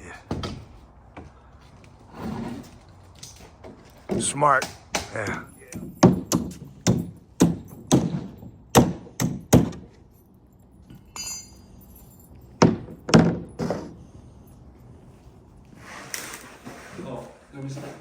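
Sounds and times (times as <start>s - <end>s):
hammer knocks on wooden boards: 3.6s - 9.9s, 12.6s - 13.9s
short scrape: 15.8s - 18.0s.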